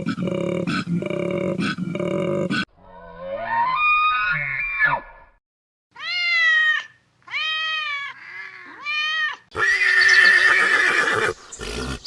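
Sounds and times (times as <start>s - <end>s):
cat meowing: 6.0s - 9.5s.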